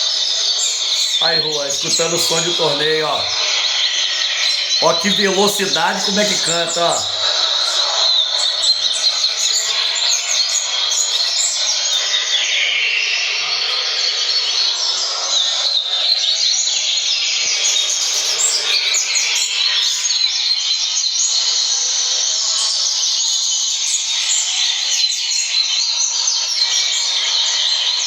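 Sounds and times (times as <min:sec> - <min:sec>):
bird singing fast song: 0:00.0 - 0:12.6
recorded birdsong playing: 0:00.0 - 0:21.7, 0:22.6 - 0:28.0.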